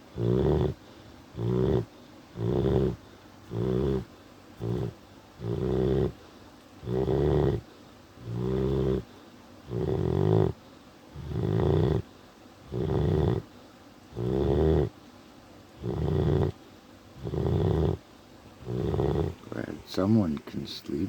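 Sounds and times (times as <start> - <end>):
dog snoring: 0.0 - 6.2, 6.8 - 13.5, 14.1 - 15.0, 15.8 - 16.6, 17.2 - 18.0, 18.6 - 19.6
dog breathing: 0.0 - 15.0, 15.8 - 18.0, 18.6 - 19.6.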